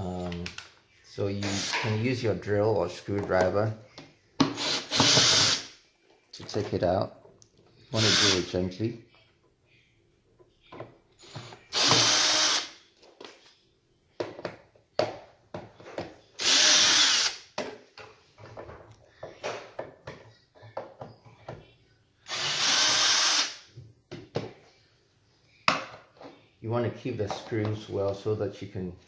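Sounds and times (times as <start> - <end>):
power drill backing out screws: 4.6 - 5.6, 11.7 - 12.7.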